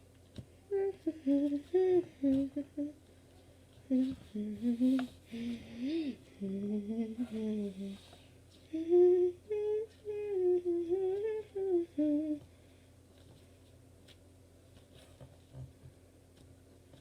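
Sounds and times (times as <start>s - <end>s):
girl humming: 0.6s - 3.0s, 3.9s - 8.0s, 8.7s - 12.4s.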